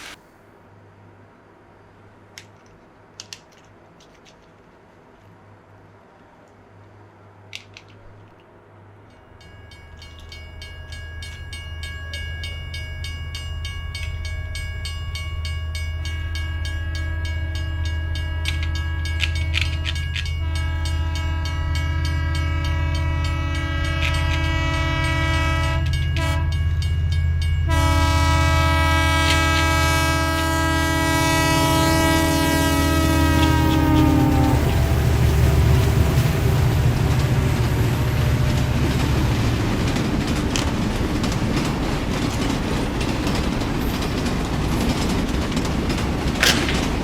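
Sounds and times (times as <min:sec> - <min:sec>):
sustained horn-like tones: 0:20.4 - 0:26.8, 0:27.6 - 0:35.7.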